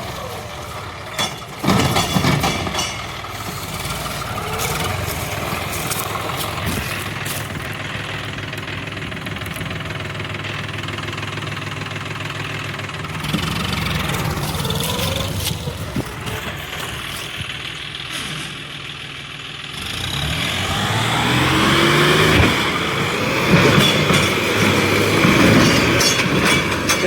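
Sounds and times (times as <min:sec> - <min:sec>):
tractor diesel engine running: 0:00.0 - 0:27.0
loud clattering knocks: 0:00.8 - 0:09.0.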